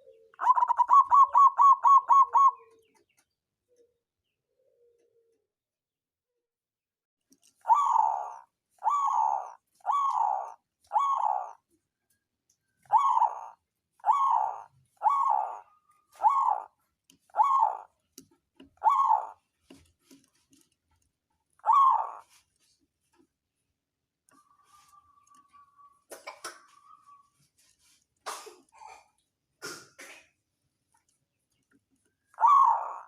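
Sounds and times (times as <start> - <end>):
dove cooing: 0.0 - 2.9, 7.6 - 11.7, 12.8 - 18.0, 18.7 - 19.8, 21.6 - 22.4, 32.2 - 33.0.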